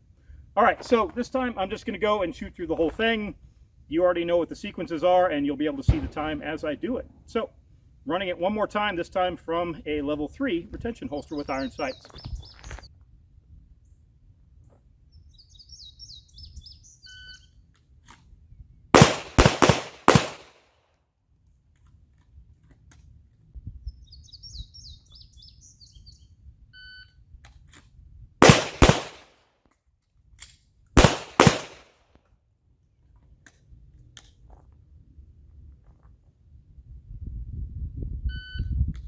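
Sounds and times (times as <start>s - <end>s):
handgun shots: 19.0s - 20.5s, 28.4s - 29.3s, 31.0s - 31.9s.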